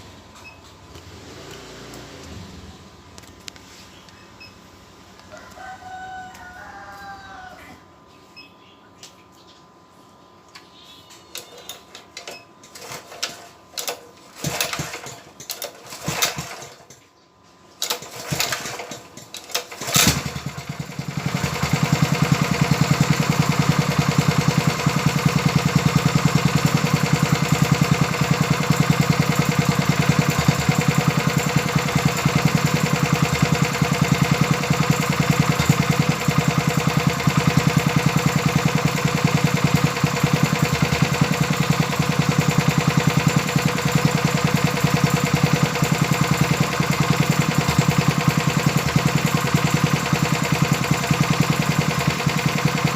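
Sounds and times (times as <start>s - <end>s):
small engine running: 14.4s - 16.8s, 17.9s - 52.9s.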